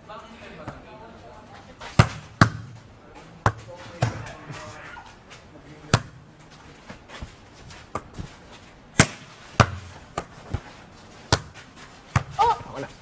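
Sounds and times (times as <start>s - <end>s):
volleyball smacks and bounces: 1.8s - 2.8s, 5.9s - 6.2s, 8.9s - 10.7s, 11.3s - 12.8s.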